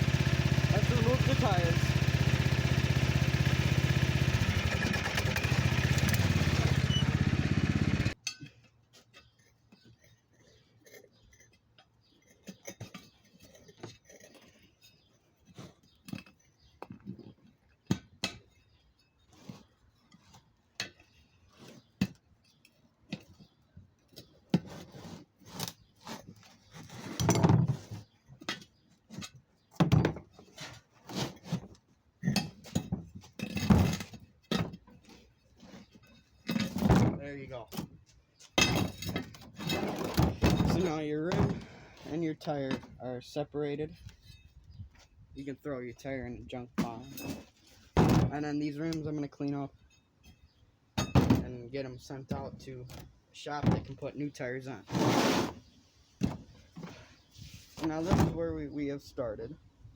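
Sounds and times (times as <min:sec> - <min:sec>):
metallic clinks and scrapes: 0:08.2 - 0:16.8, 0:30.4 - 0:36.9, 0:43.9 - 0:44.8, 0:46.8 - 0:48.0.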